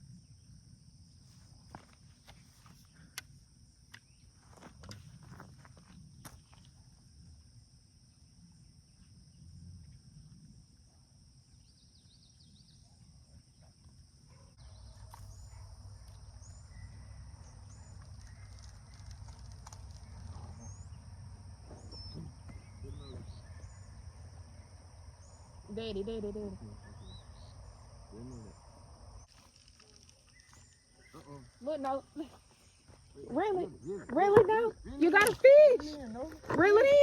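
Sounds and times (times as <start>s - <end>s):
high insect drone: 0.0s - 37.0s
faint bird chirps: 14.3s - 28.6s, 29.2s - 32.8s.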